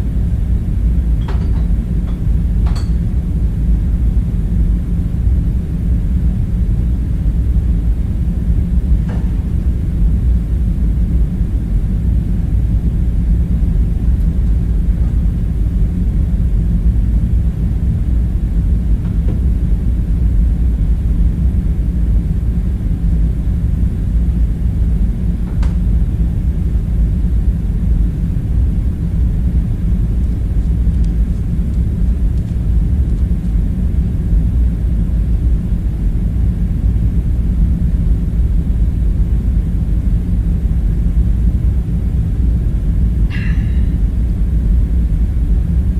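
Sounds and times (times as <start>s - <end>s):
deep low rumble: 41.4s - 45.9s.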